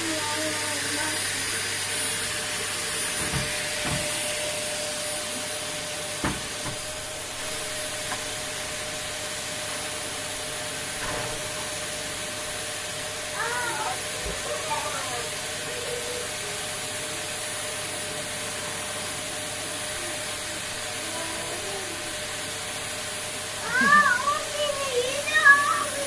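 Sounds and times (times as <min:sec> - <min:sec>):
vacuum cleaner knocking: 0:00.0 - 0:26.0
vacuum cleaner running: 0:00.0 - 0:26.0.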